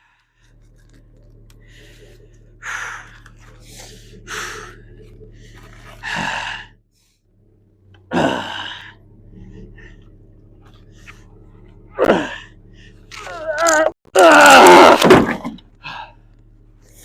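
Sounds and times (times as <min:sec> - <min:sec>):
man breathing heavily and grunting: 0:01.6 - 0:06.8, 0:08.1 - 0:10.2, 0:15.8 - 0:17.0.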